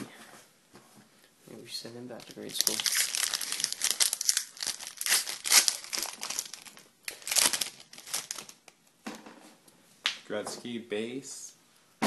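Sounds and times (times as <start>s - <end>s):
card packs crinkling and rustling: 2.1s - 8.8s.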